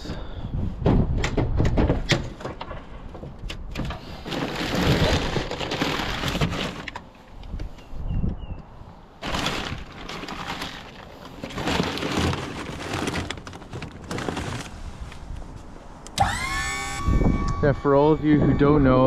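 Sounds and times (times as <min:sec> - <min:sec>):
knocks and clatter: 0:00.8 - 0:03.9.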